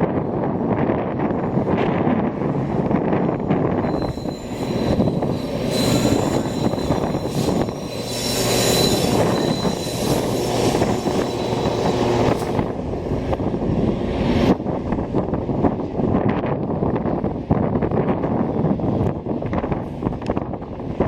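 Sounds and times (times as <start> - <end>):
train rumbling past: 0.0 - 21.0
wind buffeting microphone: 0.0 - 21.0
train wheels squealing: 3.6 - 12.8.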